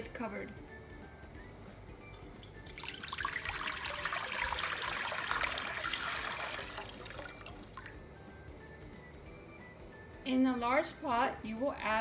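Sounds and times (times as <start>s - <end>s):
tap water splashing into a pot: 2.3s - 8.2s.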